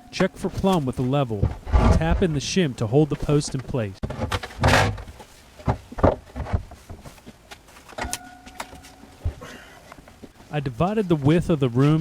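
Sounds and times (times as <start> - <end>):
scraping rustle: 0.3 - 2.4
faint ringing tone: 8.0 - 9.8.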